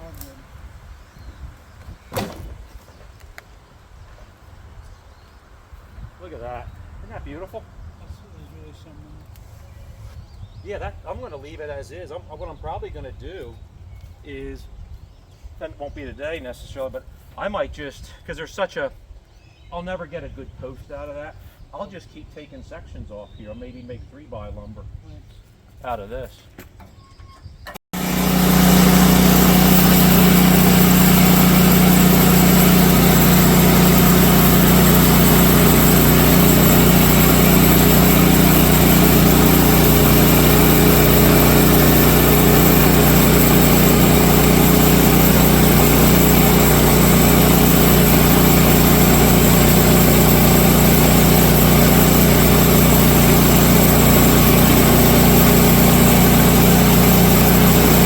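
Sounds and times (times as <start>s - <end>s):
sawmill gas engine running: 28.0s - 58.0s.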